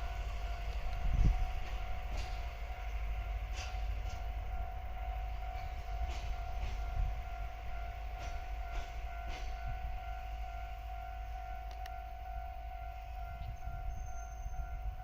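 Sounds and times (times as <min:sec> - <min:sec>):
locomotive rumble: 0:00.0 - 0:15.0
wheels clicking over rail joints: 0:03.5 - 0:04.3.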